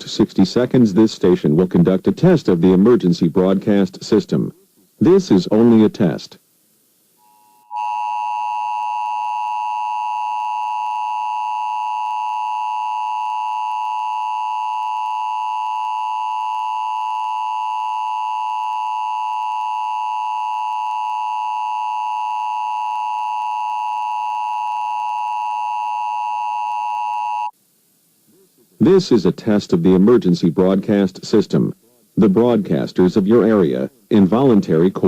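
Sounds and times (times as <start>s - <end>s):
two-tone attention signal: 7.2s - 27.5s.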